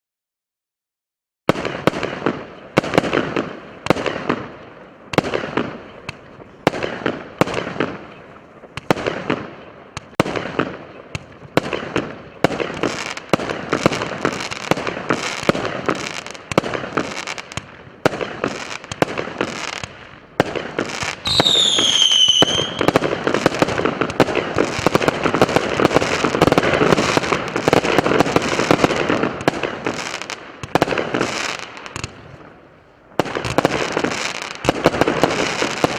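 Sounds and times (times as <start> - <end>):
firework shots with crackle: 1.5 - 32.6, 33.2 - 35.9
dense firework crackling: 1.5 - 35.9
falling whistle: 21.2 - 22.9.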